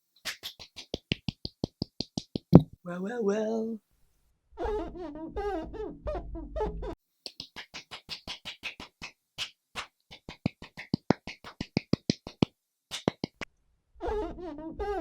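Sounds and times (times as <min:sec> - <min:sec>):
mouth clicks and pops: 0:00.2 - 0:02.8, 0:07.2 - 0:13.5.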